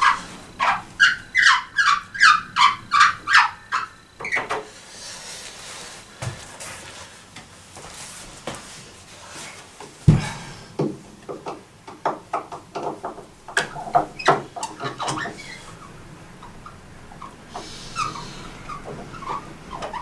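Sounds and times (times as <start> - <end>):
clicks and knocks of piano parts: 9.8 - 20.0
heavy thump: 10.1 - 11.0.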